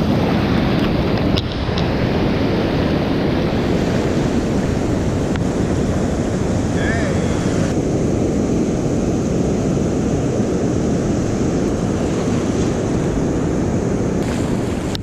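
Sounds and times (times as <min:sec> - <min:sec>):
ocean surf washing: 0:00.0 - 0:15.0
wind buffeting microphone: 0:00.0 - 0:15.0.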